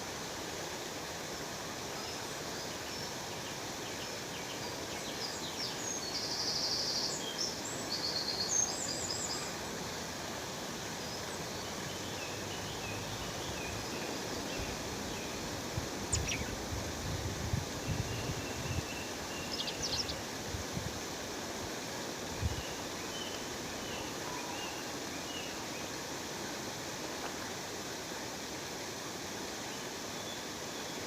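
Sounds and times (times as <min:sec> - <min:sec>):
birds chirping: 0:16.1 - 0:16.6.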